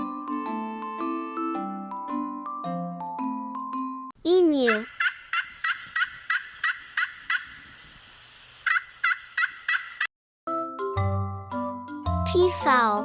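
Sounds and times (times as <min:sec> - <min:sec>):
children's music jingle: 0:00.0 - 0:04.8, 0:10.5 - 0:13.0.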